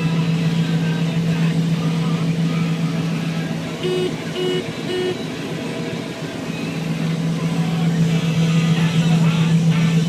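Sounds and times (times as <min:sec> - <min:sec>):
harvest machinery engine drone: 0:00.0 - 0:10.0
short high tones: 0:03.8 - 0:05.2.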